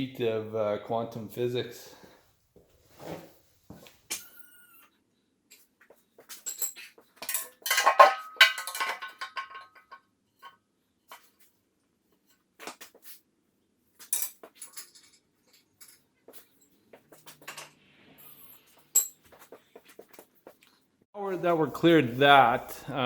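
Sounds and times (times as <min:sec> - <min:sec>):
metal tools clanking: 0:06.4 - 0:10.0.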